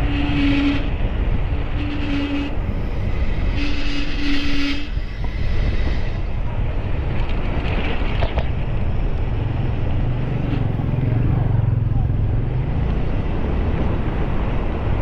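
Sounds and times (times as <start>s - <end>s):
wind on microphone: 0.0s - 11.2s
road rumble: 0.0s - 15.0s.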